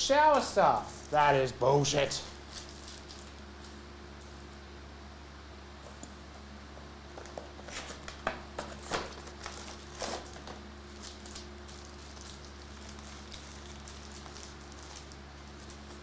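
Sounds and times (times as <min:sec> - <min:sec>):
plastic packaging crinkling: 0:00.3 - 0:03.9, 0:07.6 - 0:16.0.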